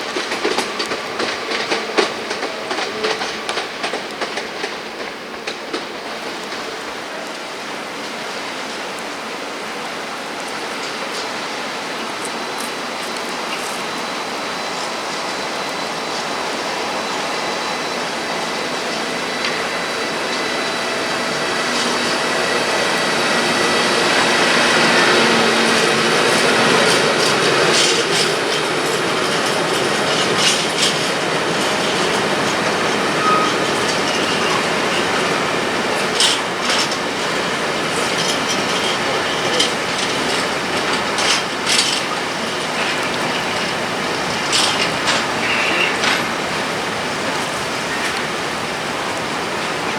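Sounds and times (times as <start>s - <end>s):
freight train wagons rumbling: 0.0s - 49.9s
wheel and brake squeals: 13.5s - 48.7s.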